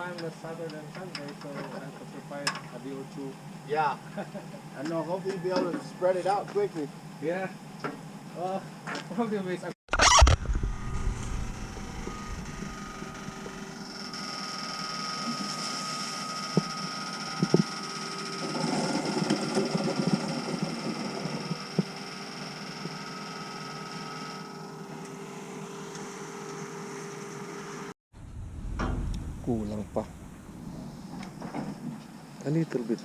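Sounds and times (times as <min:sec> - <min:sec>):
rushing noise: 0:09.9 - 0:13.8, 0:28.2 - 0:31.5
steady whine: 0:09.9 - 0:33.0
truck engine running: 0:10.4 - 0:14.0, 0:28.2 - 0:31.6.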